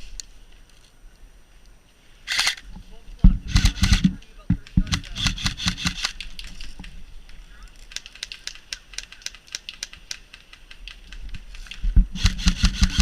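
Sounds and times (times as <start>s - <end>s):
airsoft guns firing: 3.4s - 6.2s, 12.1s - 13.0s.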